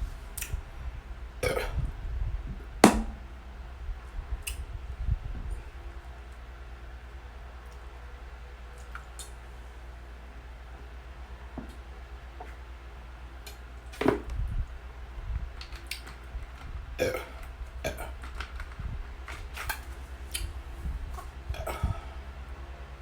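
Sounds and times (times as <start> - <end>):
person burping: 1.4 - 1.9, 17.0 - 18.2, 21.6 - 22.1
mouth clicks and crackles: 4.4 - 4.7, 15.6 - 20.6.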